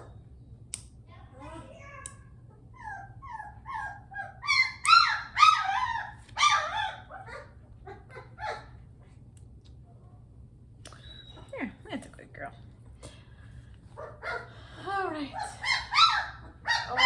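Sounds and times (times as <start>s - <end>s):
puppy whining and squealing: 2.7s - 8.8s, 10.9s - 11.6s, 15.6s - 17.0s.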